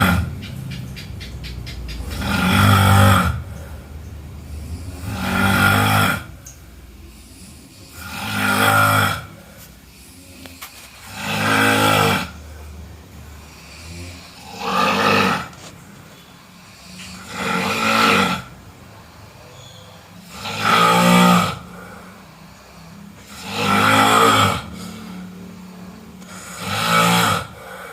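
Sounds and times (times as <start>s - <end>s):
person snoring: 2.2s - 6.4s, 7.0s - 15.7s, 16.6s - 19.5s, 20.2s - 27.9s
quiet breathing: 3.0s - 5.6s, 6.2s - 11.3s, 12.2s - 14.7s, 18.5s - 20.4s, 21.5s - 23.5s, 24.6s - 26.8s, 27.4s - 27.9s.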